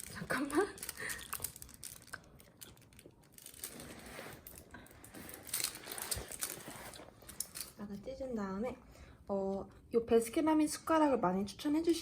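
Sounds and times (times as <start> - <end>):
medicine packaging crackling: 0.0 - 7.8.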